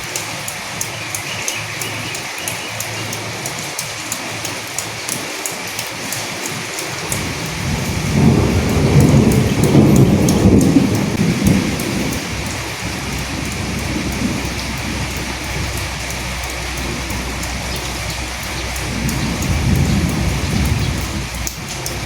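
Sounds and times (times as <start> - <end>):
single raindrops ticking: 0.0 - 22.0
steady rain: 0.0 - 22.0
thunder rolling: 7.0 - 22.0.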